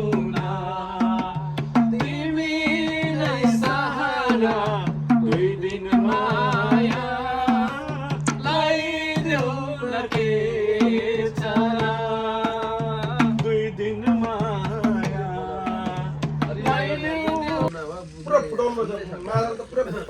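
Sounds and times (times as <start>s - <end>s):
hand drum beat: 0.0s - 17.7s.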